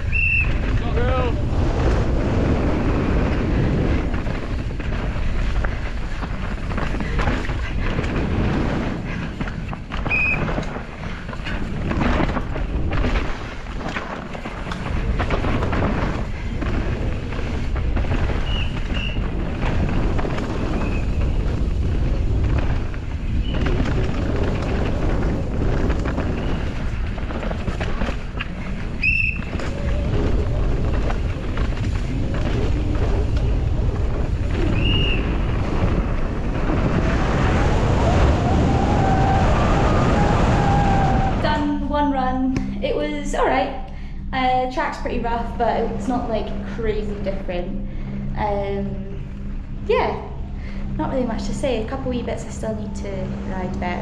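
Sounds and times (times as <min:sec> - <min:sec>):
wind buffeting microphone: 0:00.0 - 0:54.0
bike clattering on terrain: 0:01.8 - 0:38.0.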